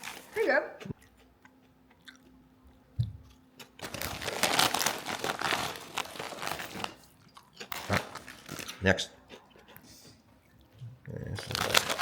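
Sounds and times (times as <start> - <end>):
plastic chip bag crinkling: 0.0 - 0.4, 3.6 - 8.9, 11.4 - 12.0.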